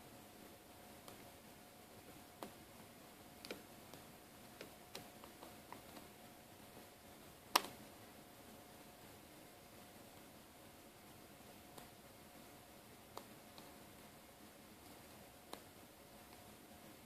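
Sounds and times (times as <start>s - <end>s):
light clicks and taps: 13.1s - 14.1s.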